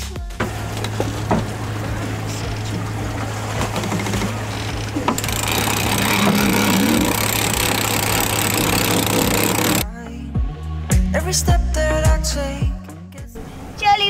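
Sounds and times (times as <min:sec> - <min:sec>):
boat engine droning and rattling: 0:00.4 - 0:09.8.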